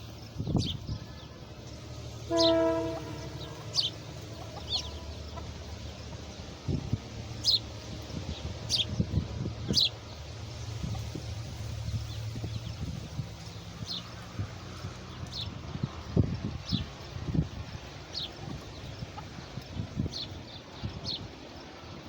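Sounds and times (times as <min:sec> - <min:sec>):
low steady rumble: 0:00.0 - 0:21.9
small birds chirping: 0:00.0 - 0:22.0
honk-like bird call: 0:02.3 - 0:05.2.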